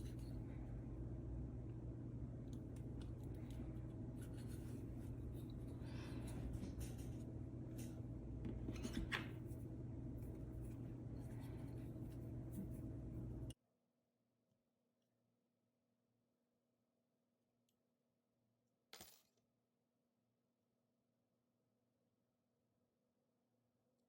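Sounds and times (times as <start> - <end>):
low electrical hum: 0.0 - 13.6.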